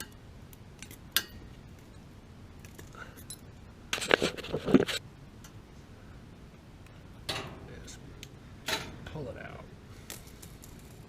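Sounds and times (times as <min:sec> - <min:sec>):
small metal parts clinking: 0:02.6 - 0:03.5, 0:10.0 - 0:11.0.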